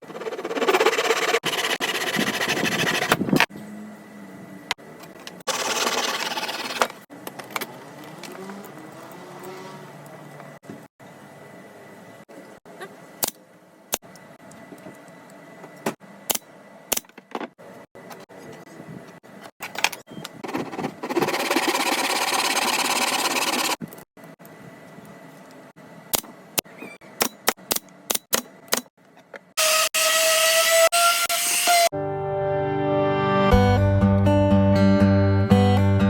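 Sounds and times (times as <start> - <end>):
small power tool motor whining: 21.0 - 23.8.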